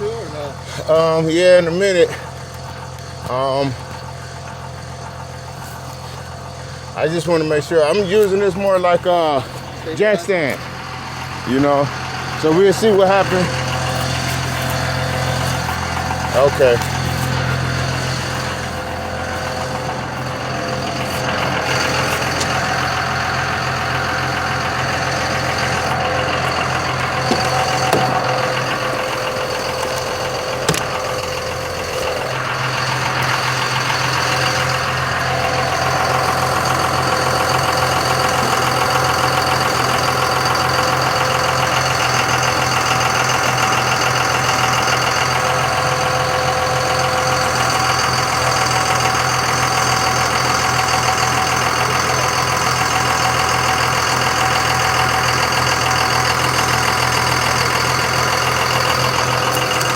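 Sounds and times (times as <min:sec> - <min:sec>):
vehicle engine idling: 0:00.0 - 0:59.9
sharp metal knocks: 0:27.2 - 0:29.1, 0:29.7 - 0:31.2.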